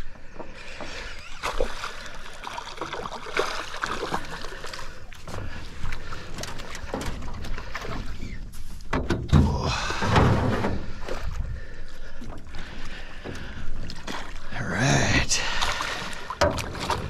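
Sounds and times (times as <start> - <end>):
clunks and knocks in boat: 0.0 - 1.7, 5.2 - 14.4, 16.2 - 17.0.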